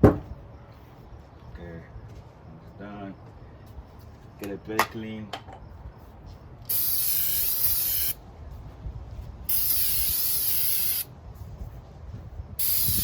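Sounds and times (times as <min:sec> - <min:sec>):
aerosol spray hissing: 0:06.7 - 0:08.2, 0:09.5 - 0:11.1, 0:12.6 - 0:13.0.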